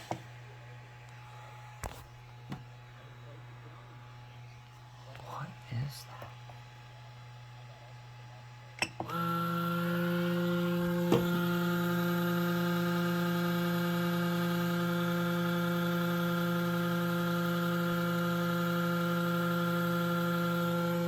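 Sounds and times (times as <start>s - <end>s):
three d printer humming: 8.7s - 21.0s.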